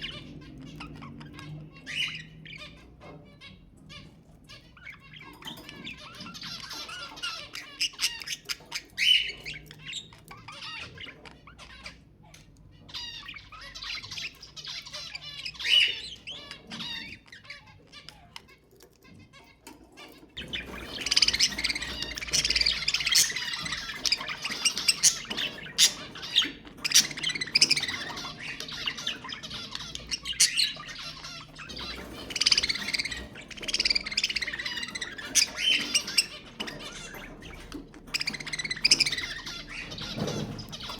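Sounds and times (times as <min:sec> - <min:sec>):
budgerigars chattering: 0:00.0 - 0:40.9
budgerigar squawks: 0:20.4 - 0:40.9.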